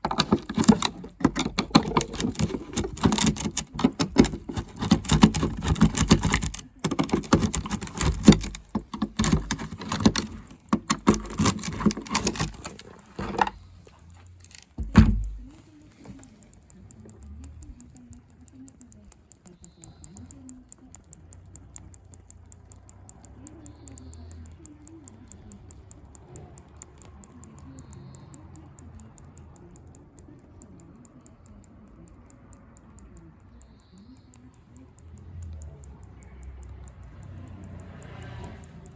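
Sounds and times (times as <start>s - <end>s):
rapid high-pitched ticking: 13.6s - 38.9s.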